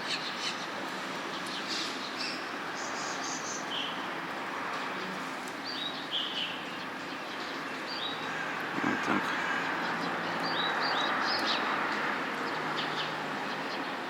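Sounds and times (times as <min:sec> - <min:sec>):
steady background noise: 0:00.0 - 0:14.0
birds chirping: 0:05.0 - 0:14.0.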